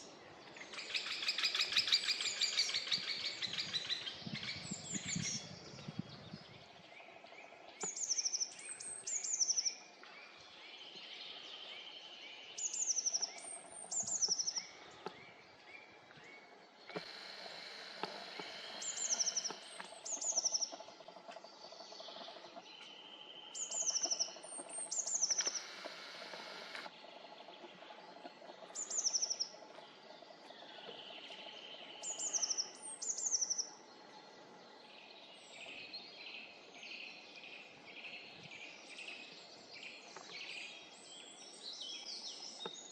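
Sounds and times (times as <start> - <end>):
other birds calling: 16.8 - 22.6
songbird singing high trills: 18.4 - 20.8, 22.7 - 25.8, 28.8 - 29.6.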